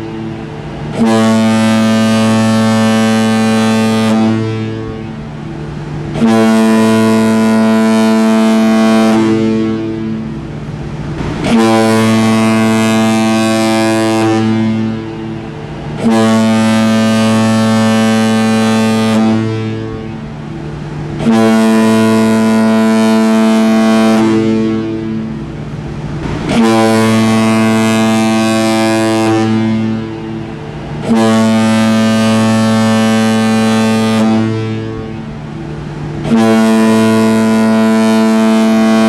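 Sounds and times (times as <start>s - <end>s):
deep ship horn blasts: 0.0s - 39.0s.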